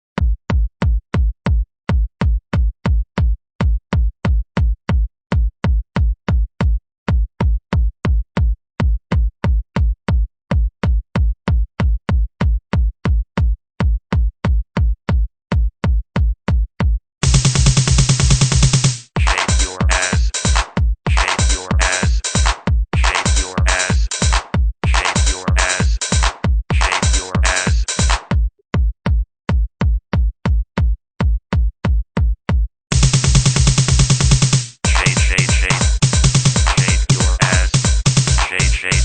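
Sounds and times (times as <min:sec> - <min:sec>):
punchy kick drum hits: 0:17.2 - 0:18.8, 0:32.9 - 0:37.1
electronic dance music: 0:17.2 - 0:28.4, 0:32.9 - 0:39.0.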